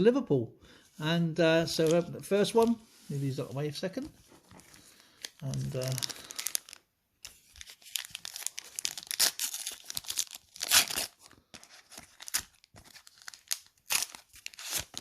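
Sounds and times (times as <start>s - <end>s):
foil wrapper tearing and crinkling: 4.8s - 15.0s.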